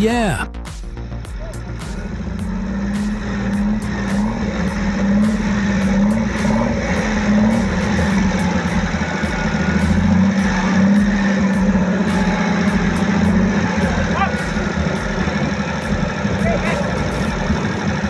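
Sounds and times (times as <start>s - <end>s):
buggy engine at full throttle: 1.3s - 18.0s.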